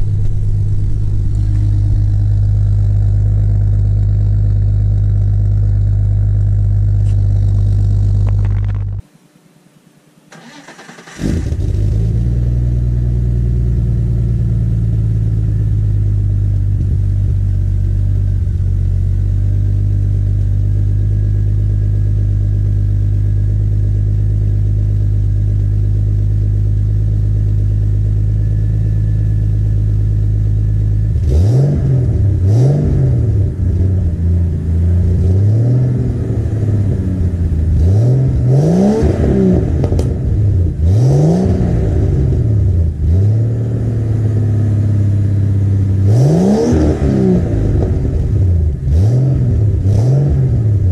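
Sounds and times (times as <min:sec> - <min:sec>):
car engine running: 0:00.0 - 0:09.0, 0:10.3 - 0:50.9
engine throttle blips: 0:00.0 - 0:09.0, 0:10.3 - 0:50.9
engine cranking: 0:10.3 - 0:11.6.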